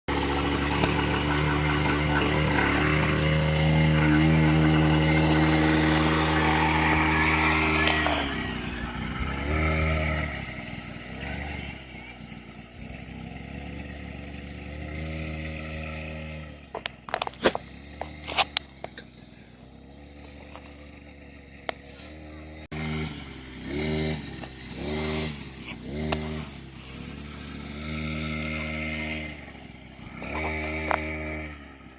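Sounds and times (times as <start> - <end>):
small atv engine running: 0.1 - 31.9.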